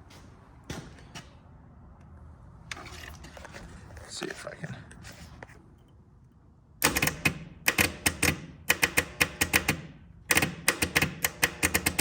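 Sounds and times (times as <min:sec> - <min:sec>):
starter solenoid clicking rapidly: 0:06.8 - 0:12.0.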